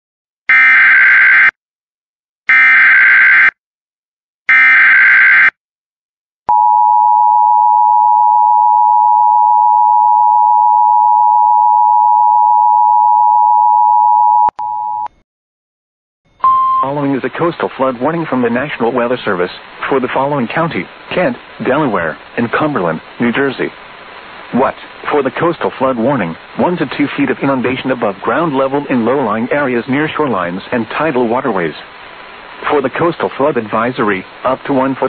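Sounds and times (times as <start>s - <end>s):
two-tone attention signal: 16.4s - 17.0s.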